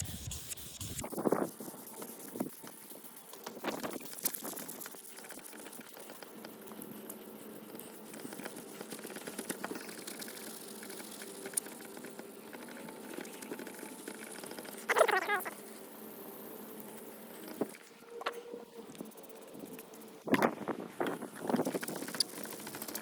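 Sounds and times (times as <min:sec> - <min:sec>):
sandpaper rubbing on plastic: 0:00.0 - 0:06.2.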